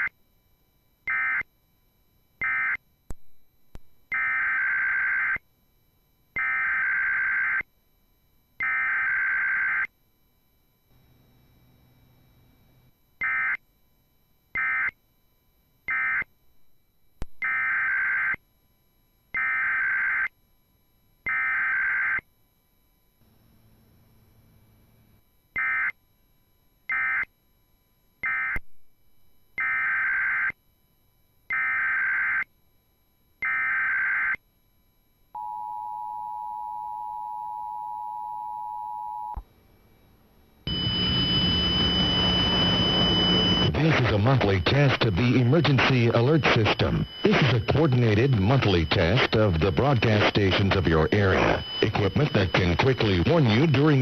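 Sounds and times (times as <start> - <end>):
harsh buzzing tone: 0.0 - 54.0
screeching digital data bursts: 40.7 - 54.0
two-tone attention signal: 40.7 - 54.0.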